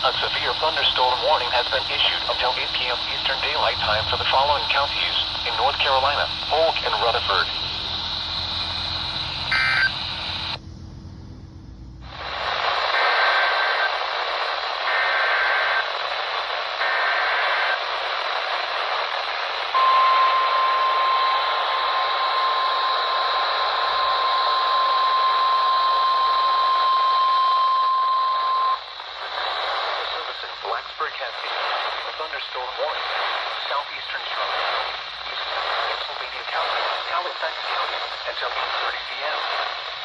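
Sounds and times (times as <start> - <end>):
data bursts: 0.0 - 10.6, 19.8 - 29.0
radio static: 0.0 - 10.6, 12.1 - 40.0
steady alert tone: 9.5 - 10.0.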